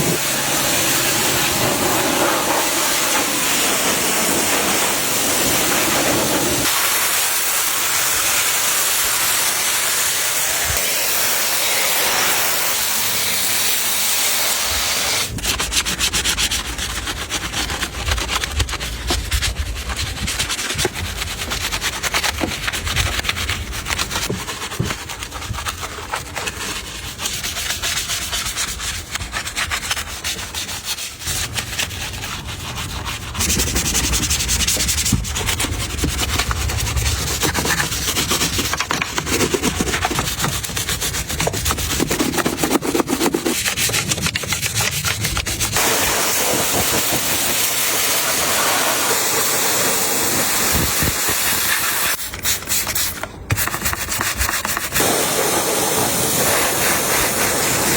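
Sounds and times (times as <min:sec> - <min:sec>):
spray hissing: 0:00.0 - 0:15.3, 0:45.8 - 0:53.8, 0:54.8 - 0:57.9
rapid scrubbing on a surface: 0:00.0 - 0:57.9.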